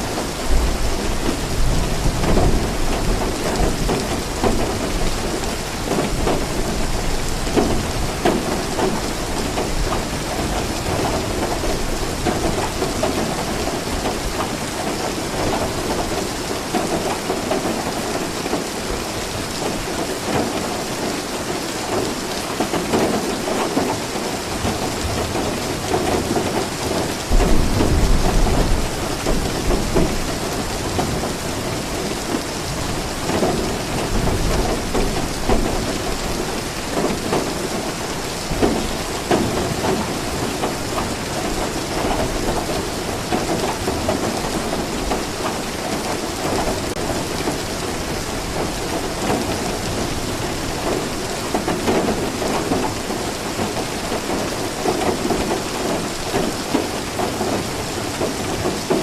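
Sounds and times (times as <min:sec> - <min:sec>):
steady rainfall: 0:00.0 - 0:59.0
thunder rumbling: 0:27.0 - 0:45.2.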